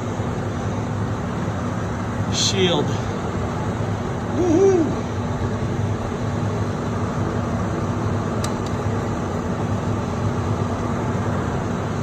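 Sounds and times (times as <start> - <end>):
mechanical drone with low hum: 0.0 - 12.0
light clicks: 8.4 - 8.8.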